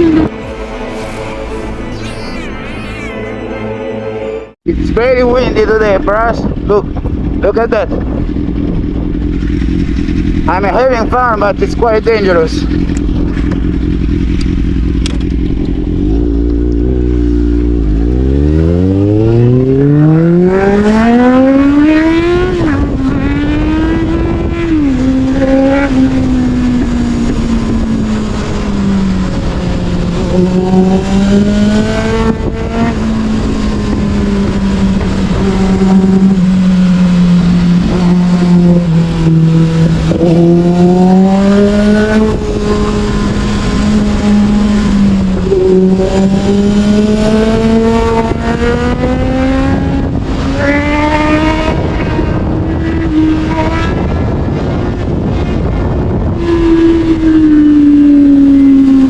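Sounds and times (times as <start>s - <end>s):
motorcycle engine revving: 4.6s - 59.0s
wind rushing over microphone: 4.6s - 59.0s.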